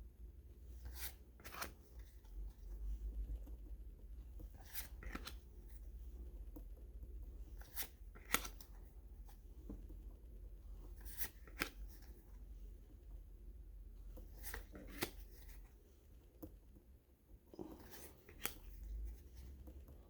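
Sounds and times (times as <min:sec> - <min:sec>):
cards flicking and rustling: 0:00.8 - 0:02.7, 0:04.4 - 0:05.5, 0:07.5 - 0:08.8, 0:11.0 - 0:12.2, 0:14.2 - 0:15.6, 0:17.6 - 0:19.9.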